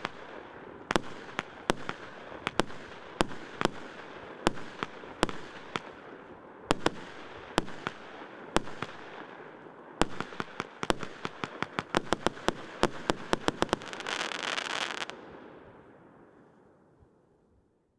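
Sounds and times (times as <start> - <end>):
fireworks hissing crackle: 0.0 - 9.0, 10.0 - 15.2
fireworks bangs: 0.0 - 15.4.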